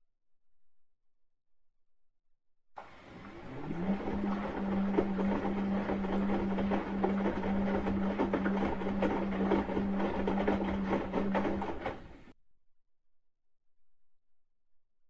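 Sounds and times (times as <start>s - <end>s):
rattling and clatter: 2.8s - 12.3s
washing machine motor humming: 2.8s - 12.3s.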